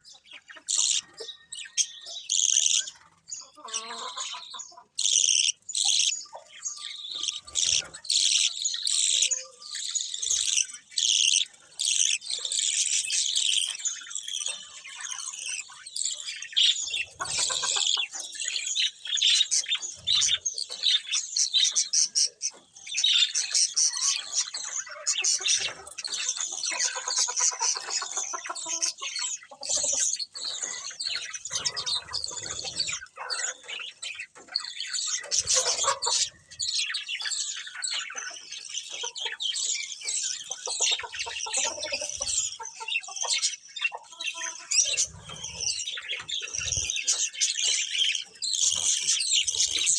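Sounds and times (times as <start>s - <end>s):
budgerigars chirping and warbling: 0.0s - 49.9s.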